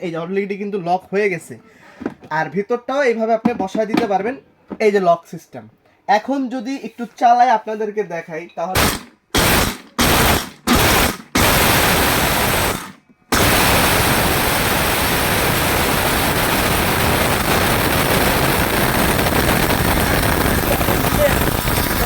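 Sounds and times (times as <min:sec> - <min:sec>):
mixer grinder motor grinding: 0:08.8 - 0:22.0.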